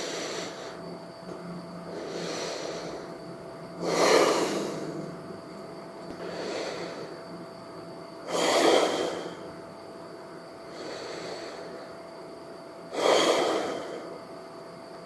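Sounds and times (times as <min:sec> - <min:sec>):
man breathing heavily: 0:00.0 - 0:00.8, 0:01.9 - 0:03.2, 0:03.8 - 0:05.2, 0:06.1 - 0:07.2, 0:08.3 - 0:09.6, 0:10.7 - 0:12.0, 0:12.9 - 0:14.2.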